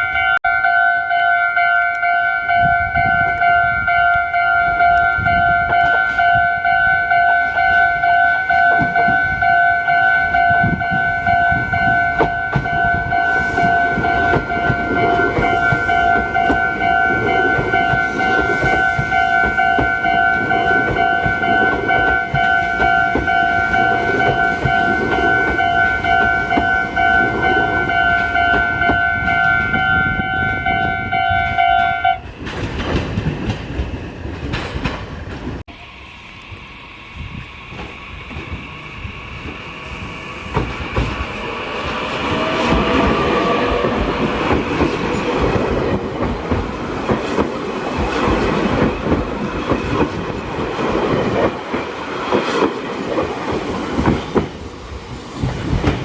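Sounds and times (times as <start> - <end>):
level-crossing warning bell: 0.0 - 32.3
train wheels clicking over rail joints: 3.2 - 35.6, 36.4 - 56.0.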